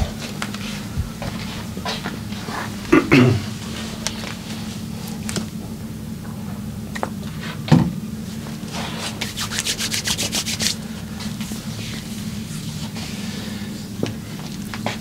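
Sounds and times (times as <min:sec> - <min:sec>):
hands rubbing over skin: 0:08.7 - 0:13.4.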